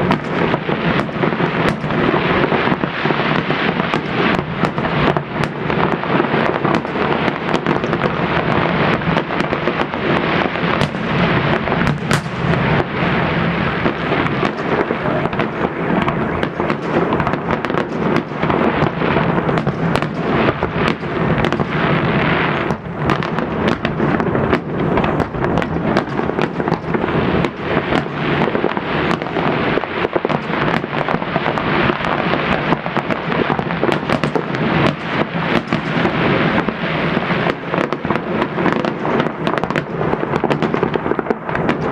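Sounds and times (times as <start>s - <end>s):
fireworks bangs: 0.0s - 41.9s.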